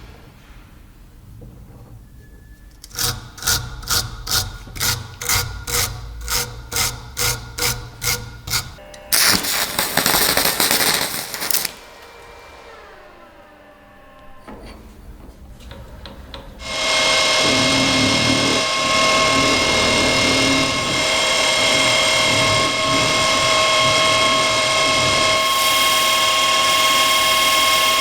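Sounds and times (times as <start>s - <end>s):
hand tool scraping strokes: 2.8s - 12.2s
power tool running and spinning down: 2.8s - 13.9s, 16.6s - 28.0s.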